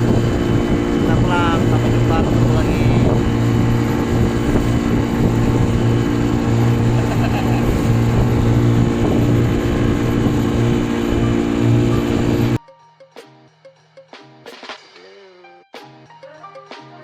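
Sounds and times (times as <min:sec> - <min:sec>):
boat engine droning: 0:00.0 - 0:12.6
wind and water rushing: 0:00.0 - 0:12.6.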